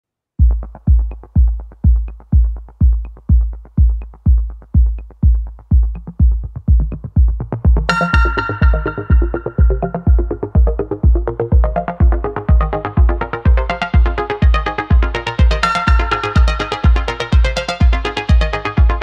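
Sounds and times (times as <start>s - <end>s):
electronic music: 0.4s - 19.0s
heavy kick drum beat: 0.4s - 19.0s
bright synth chord: 7.9s - 10.8s.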